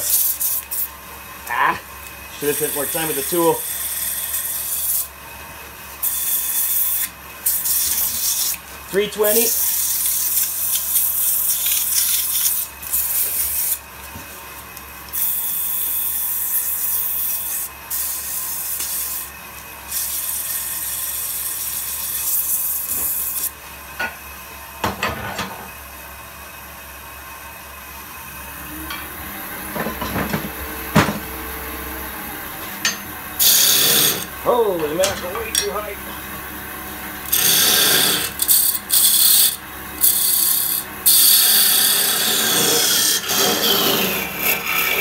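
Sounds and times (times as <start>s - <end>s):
sandpaper hissing on spinning wood: 0.0s - 0.9s, 2.4s - 5.1s, 6.0s - 13.8s, 15.2s - 19.3s, 33.4s - 34.6s, 37.3s - 45.0s
lathe motor hum: 2.3s - 5.0s, 28.0s - 45.0s.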